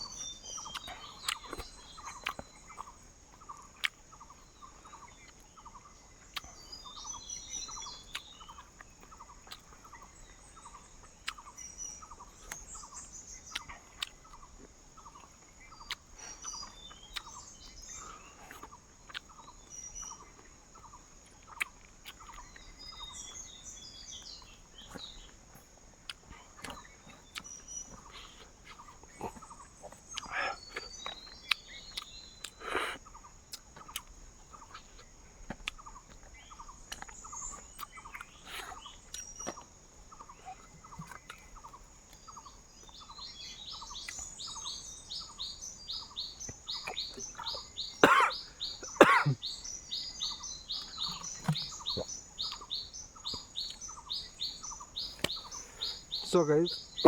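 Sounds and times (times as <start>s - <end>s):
birds chirping: 0.0s - 57.0s
insect drone: 22.2s - 57.0s.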